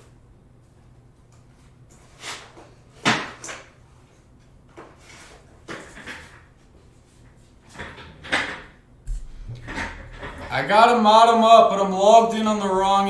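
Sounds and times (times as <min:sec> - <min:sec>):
objects knocking and scraping: 0:04.8 - 0:06.5, 0:07.7 - 0:10.9
faint low hum: 0:09.0 - 0:13.0.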